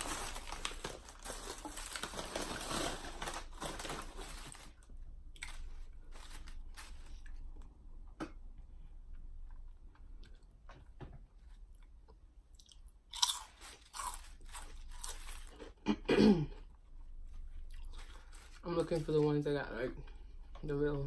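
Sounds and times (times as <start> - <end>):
chewing potato chips: 5.3 - 7.7, 11.7 - 16.0, 17.6 - 18.6.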